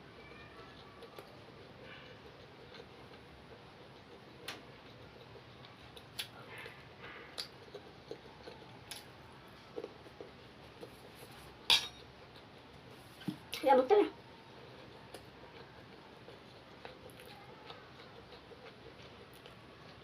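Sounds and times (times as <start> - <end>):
light clicks of eating from a plate: 4.0 - 5.1.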